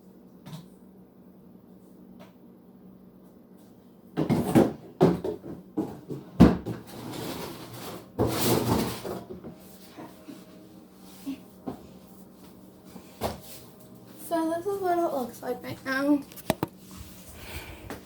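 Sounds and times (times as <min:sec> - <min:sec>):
knocks and bumps at refrigerator: 0:04.2 - 0:09.6.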